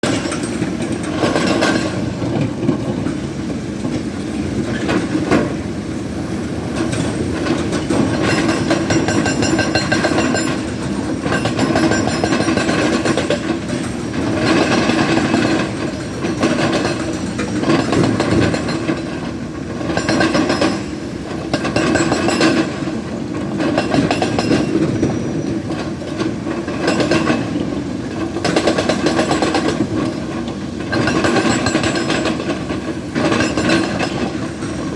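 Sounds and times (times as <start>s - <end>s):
hydraulic breaker hammering rock: 6.8s - 25.2s, 26.5s - 34.9s.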